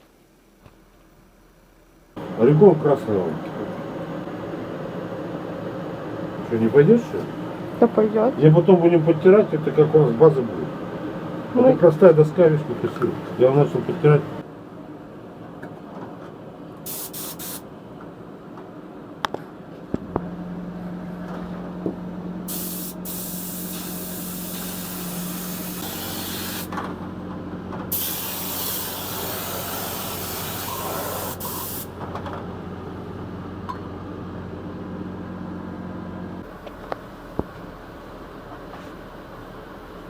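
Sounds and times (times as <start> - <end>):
loud hissing bursts: 16.9 - 17.6, 22.5 - 26.8, 27.9 - 31.9.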